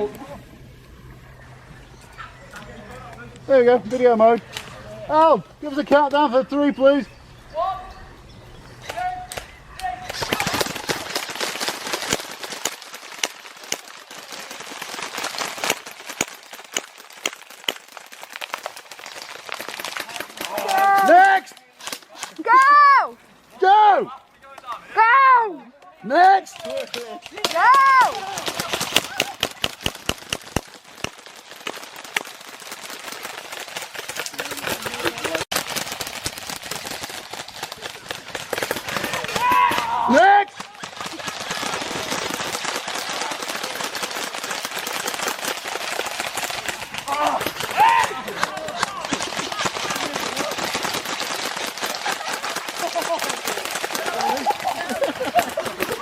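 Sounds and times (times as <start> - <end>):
airsoft gun shots: 8.8 - 13.2
airsoft guns firing: 8.8 - 22.7, 26.5 - 56.0.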